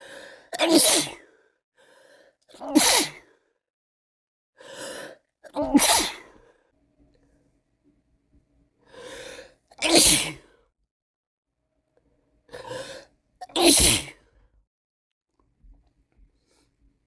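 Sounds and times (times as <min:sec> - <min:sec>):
person sneezing: 0:00.6 - 0:01.2, 0:02.6 - 0:03.2, 0:05.5 - 0:06.3, 0:09.8 - 0:10.4, 0:12.6 - 0:14.2.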